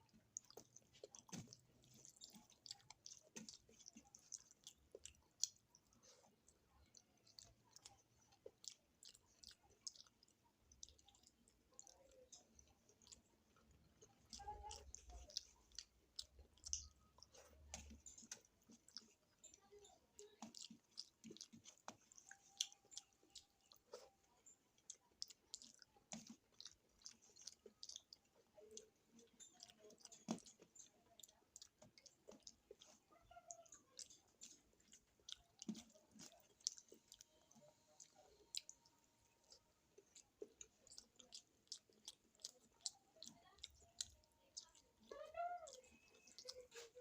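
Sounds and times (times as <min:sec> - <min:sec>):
person chewing food: 0:00.0 - 0:47.0
wet mouth clicks: 0:00.0 - 0:47.0.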